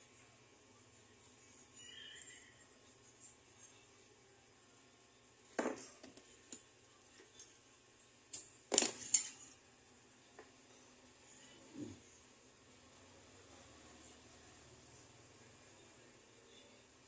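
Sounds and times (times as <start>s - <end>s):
small metal objects clinking: 1.2s - 2.6s, 8.3s - 9.6s.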